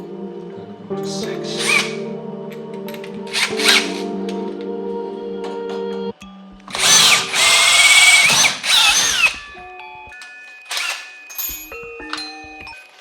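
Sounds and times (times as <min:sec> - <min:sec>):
power drill drilling metal: 0:01.6 - 0:02.0, 0:03.3 - 0:04.0, 0:06.7 - 0:09.6, 0:10.7 - 0:11.1.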